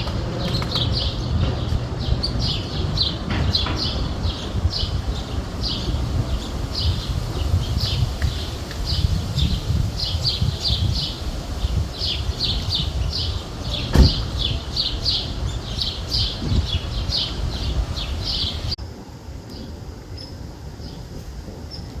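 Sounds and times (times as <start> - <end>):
bird chirping: 0.0 - 18.8
low wind rumble: 0.0 - 22.0
sharp knock: 13.9 - 14.3.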